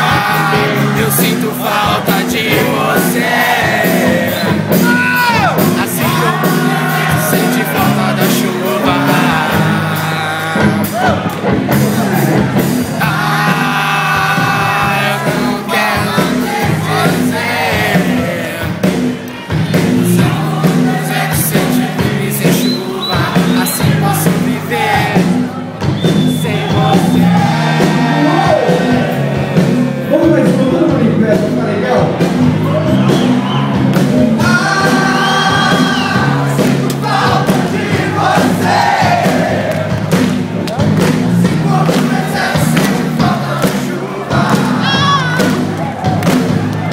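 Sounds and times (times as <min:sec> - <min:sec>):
singer holding long notes: 0:00.0 - 0:18.8
lead singer singing: 0:00.0 - 0:19.0, 0:19.7 - 0:30.9, 0:34.3 - 0:39.9, 0:41.3 - 0:45.6
rock band playing live: 0:00.0 - 0:46.9
steady drum beat: 0:00.0 - 0:46.9.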